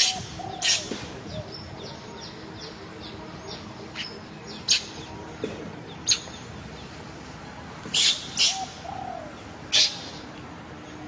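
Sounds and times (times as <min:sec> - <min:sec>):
sharp bird calls: 0:00.0 - 0:05.2, 0:07.9 - 0:10.3
birds chirping: 0:00.0 - 0:11.0.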